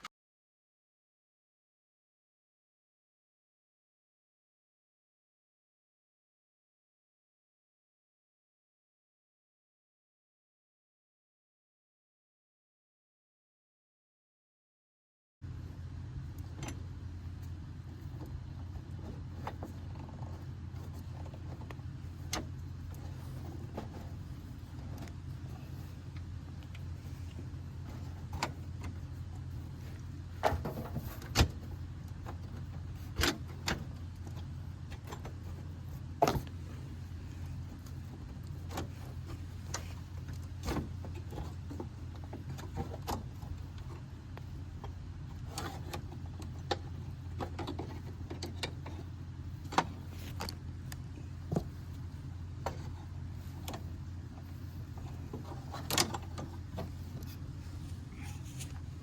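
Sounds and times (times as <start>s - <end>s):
steady low hum: 15.4s - 59.0s
tools clicking and clanking on a car: 16.4s - 59.0s.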